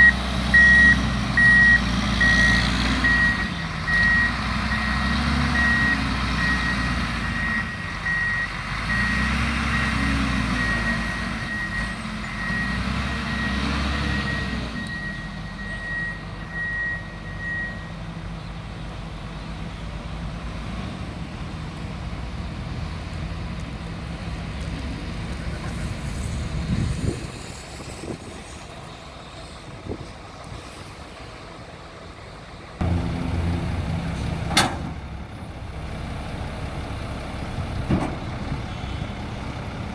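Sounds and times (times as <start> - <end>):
tractor diesel engine revving: 0.0 - 16.8, 24.4 - 39.9
reversing alarm beeping: 0.0 - 18.0.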